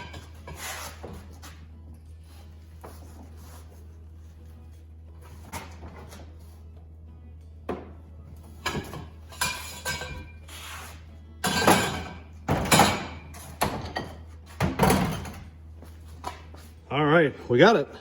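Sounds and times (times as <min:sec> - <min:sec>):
metal clanks and knocks: 0:07.6 - 0:10.4, 0:11.4 - 0:15.6.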